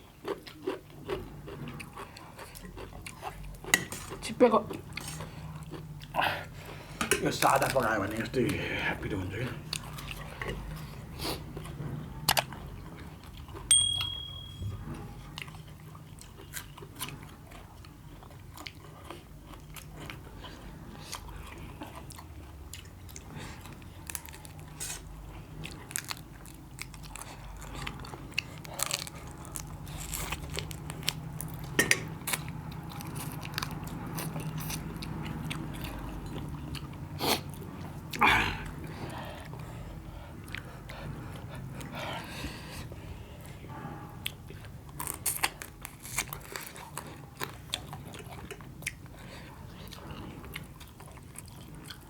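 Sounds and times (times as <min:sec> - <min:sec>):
person crunching and chewing: 0:00.0 - 0:14.1, 0:15.4 - 0:39.7, 0:44.2 - 0:52.0
sharp ringing clink: 0:13.7 - 0:14.8.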